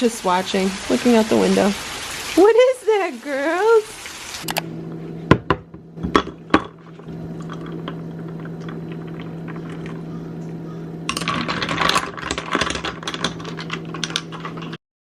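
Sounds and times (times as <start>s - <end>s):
heavy rain beating on house: 0.0s - 4.4s.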